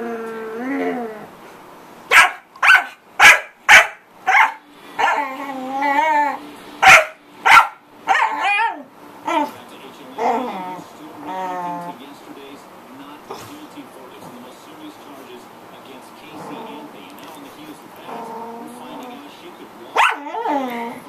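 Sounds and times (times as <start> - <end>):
dog barking: 2.1 - 5.3, 6.8 - 9.5, 20.0 - 20.5.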